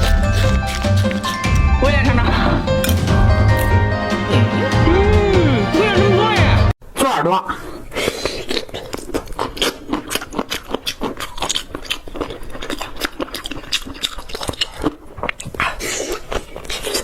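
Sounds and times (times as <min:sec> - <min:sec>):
crunchy chewing of food: 0:00.0 - 0:01.6, 0:08.0 - 0:17.0.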